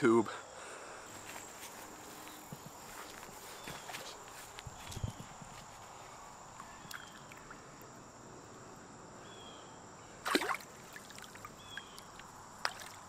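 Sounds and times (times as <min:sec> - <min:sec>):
falling bird chirp: 0:11.6 - 0:12.1.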